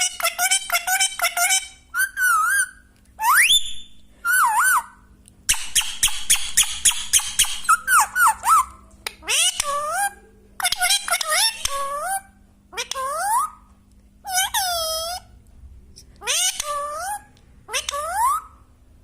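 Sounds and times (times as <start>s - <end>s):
parrot whistling and chirping: 0.1s - 12.2s, 16.2s - 18.6s.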